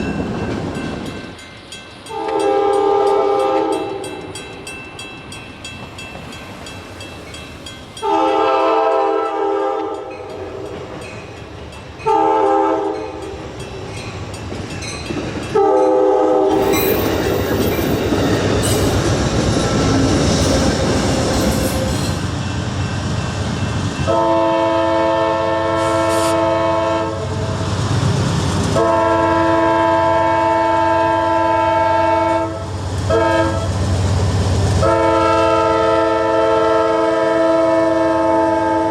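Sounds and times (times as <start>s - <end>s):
train wheels clattering on rails: 0.0s - 8.5s, 12.8s - 24.6s
locomotive air horn blasts: 2.1s - 4.1s, 8.0s - 10.3s, 12.0s - 13.2s, 15.5s - 16.8s, 24.0s - 27.5s, 28.8s - 33.7s, 34.8s - 38.9s.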